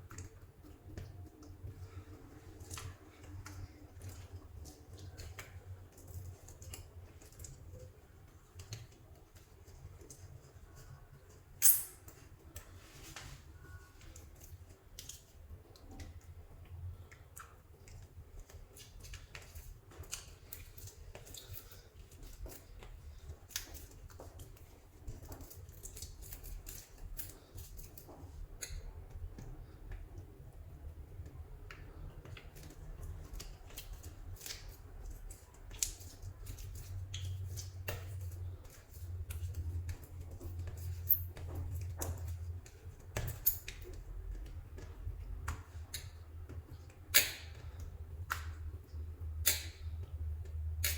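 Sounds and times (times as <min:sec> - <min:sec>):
hands squeezing soft clay: 0:00.0 - 0:11.6, 0:12.2 - 0:49.4.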